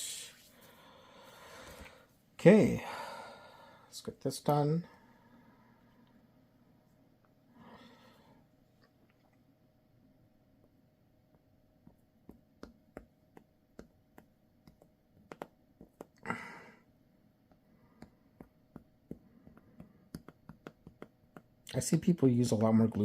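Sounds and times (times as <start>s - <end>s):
small clicks and taps: 11.8s - 16.2s, 17.5s - 21.5s.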